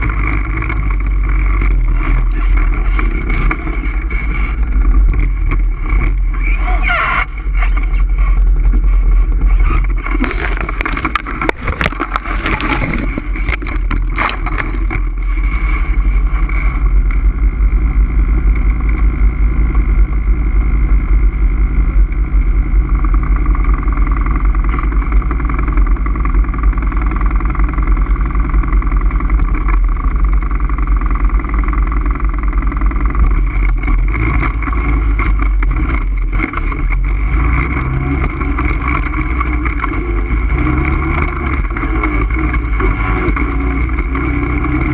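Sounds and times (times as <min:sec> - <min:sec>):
atv engine rumbling: 0:00.0 - 0:44.9
knocks and rattles: 0:07.3 - 0:17.3.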